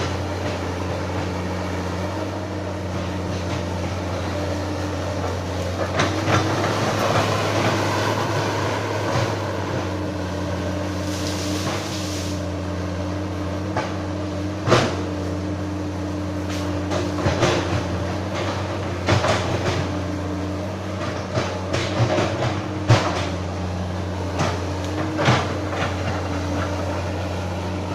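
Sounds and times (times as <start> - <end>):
excavator diesel engine running: 0.0 - 27.9
brief hiss: 11.0 - 12.4.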